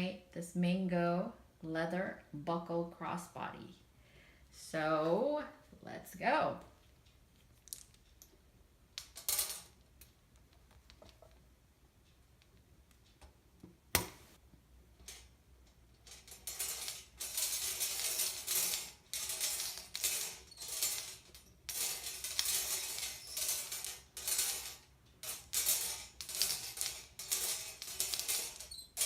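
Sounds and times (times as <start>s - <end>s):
small pieces rattling in a container: 16.1s - 29.0s.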